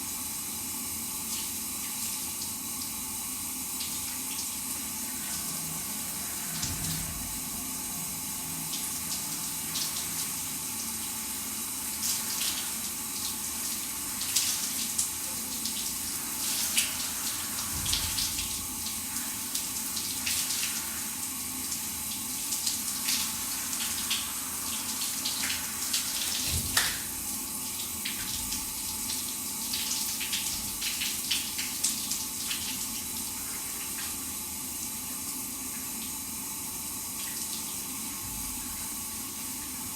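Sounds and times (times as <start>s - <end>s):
shower spray hissing: 5.0s - 27.2s.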